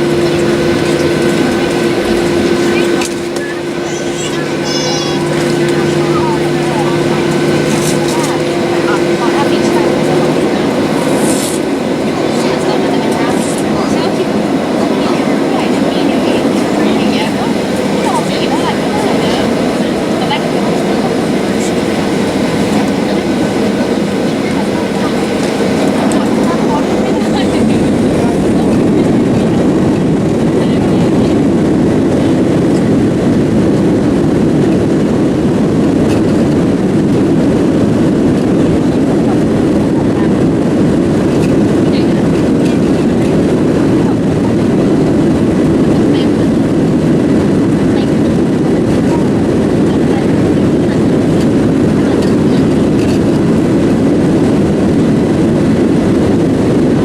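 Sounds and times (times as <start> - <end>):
rushing air: 0.0 - 30.6
jet engines roaring: 0.0 - 57.0.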